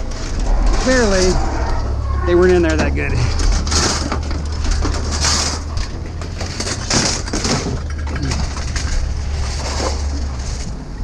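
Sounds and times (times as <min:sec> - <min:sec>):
low engine hum: 0:00.0 - 0:11.0
scrap metal clanking: 0:00.0 - 0:11.0.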